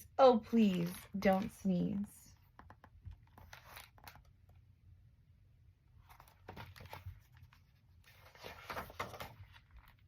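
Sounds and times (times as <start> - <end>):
book page turning: 0.5 - 4.6, 6.0 - 10.0.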